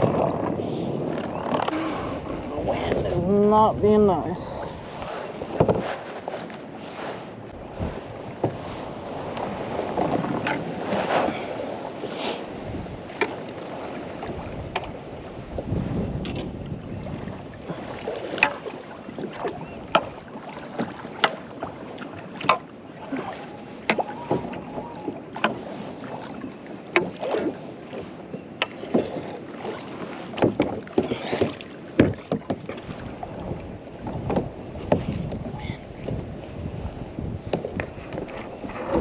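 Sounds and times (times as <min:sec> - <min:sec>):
water slapping against hull: 0:00.0 - 0:39.0
wind on microphone: 0:00.0 - 0:39.0
knocks against kayak hull: 0:30.4 - 0:32.9.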